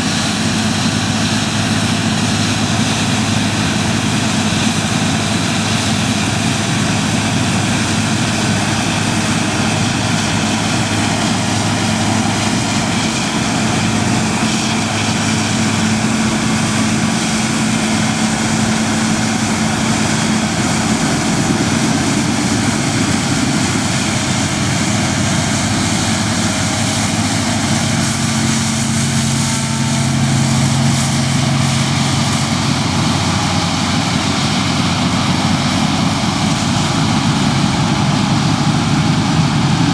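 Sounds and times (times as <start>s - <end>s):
combine harvester engine hum: 0.0s - 39.9s
threshing machinery rushing: 7.7s - 34.2s.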